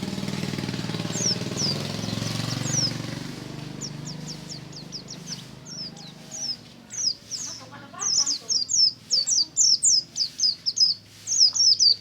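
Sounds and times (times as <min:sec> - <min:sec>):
low pulsing engine drone: 0:00.0 - 0:06.6
birds chirping falling notes: 0:00.0 - 0:12.0.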